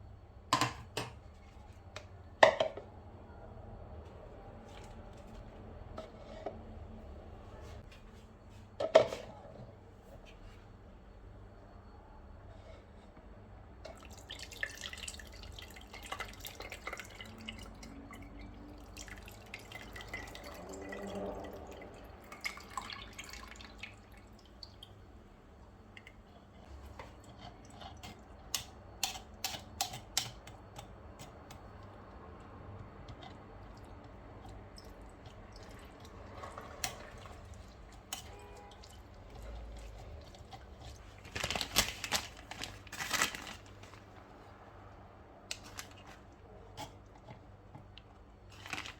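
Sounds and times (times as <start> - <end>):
liquid dripping: 33.6 - 41.1.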